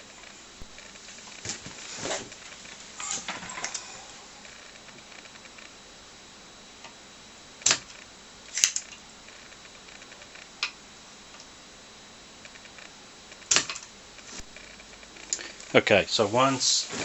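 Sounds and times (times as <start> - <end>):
desoldering pump snapping: 7.6 - 9.0
faint small ticks: 7.6 - 11.5, 12.4 - 15.7.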